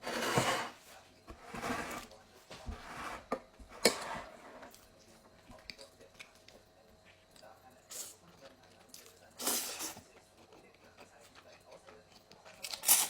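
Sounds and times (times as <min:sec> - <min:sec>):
crunchy chewing: 0:04.7 - 0:13.0.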